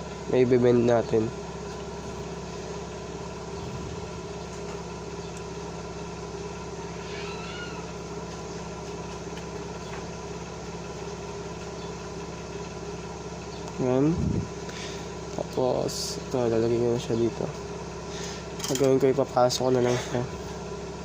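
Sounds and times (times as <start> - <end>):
steady mechanical hum: 0.0 - 21.0.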